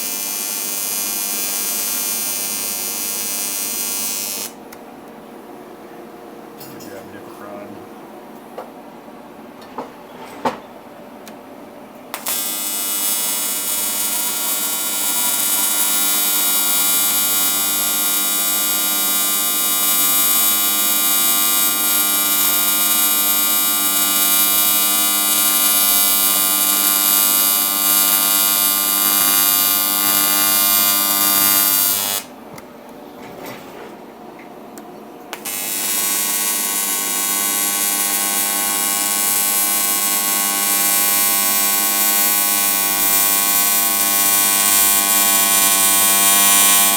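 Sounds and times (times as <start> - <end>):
welding arc buzzing: 0.0 - 4.8, 12.1 - 32.4, 35.3 - 46.9.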